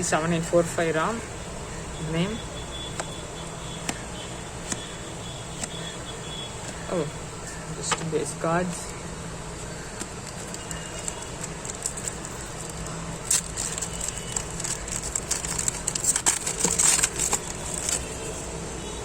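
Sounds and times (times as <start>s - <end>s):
cards rustling and clicking: 4.6s - 5.0s, 6.6s - 9.0s, 9.6s - 18.4s
foil packet crinkling and tearing: 9.7s - 18.4s.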